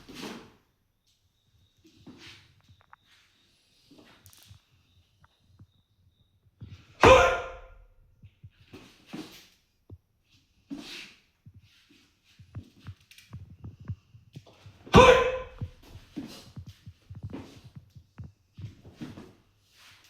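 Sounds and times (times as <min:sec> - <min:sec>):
person shouting sharply: 0:07.0 - 0:07.6, 0:15.0 - 0:15.5
forceful breaths: 0:13.4 - 0:16.6
light scuffs: 0:14.4 - 0:20.0.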